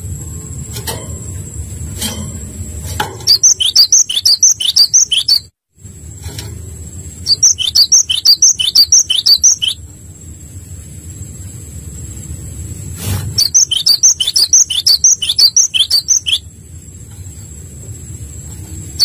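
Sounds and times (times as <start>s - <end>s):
bird singing high falling chirps: 3.2s - 5.5s, 7.2s - 9.9s, 13.4s - 16.6s.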